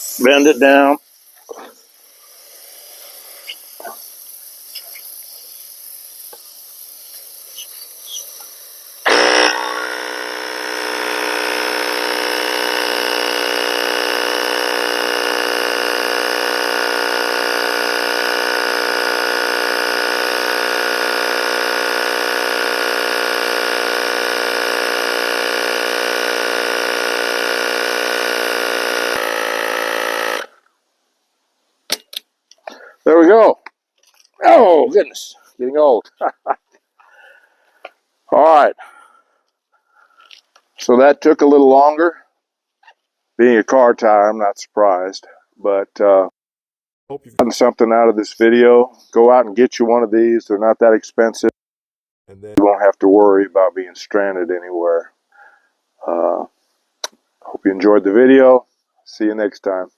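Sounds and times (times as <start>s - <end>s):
tire inflator compressor buzzing: 0.0s - 30.7s.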